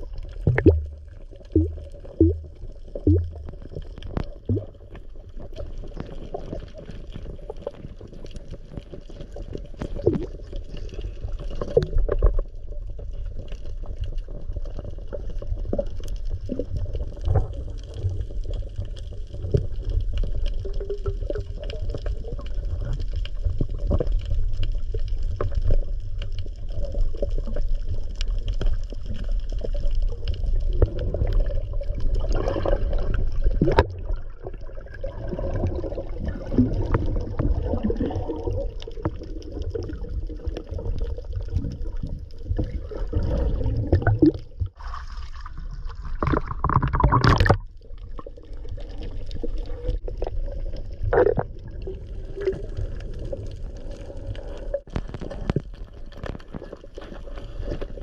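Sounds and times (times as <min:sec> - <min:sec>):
low rumble: 0:00.0 - 0:03.8
water sloshing and gurgling: 0:00.0 - 0:58.0
knocks and splashes: 0:00.4 - 0:01.0, 0:43.2 - 0:47.6.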